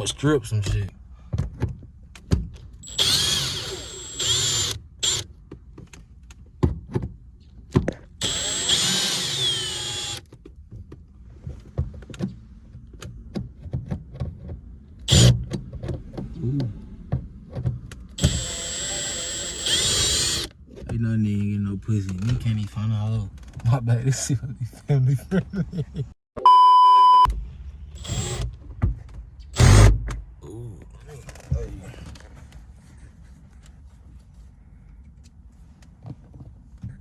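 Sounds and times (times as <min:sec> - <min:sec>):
power drill motor whining: 0:02.8 - 0:05.2, 0:08.2 - 0:10.2, 0:15.1 - 0:15.3, 0:18.2 - 0:20.5, 0:28.0 - 0:28.4, 0:29.6 - 0:29.9.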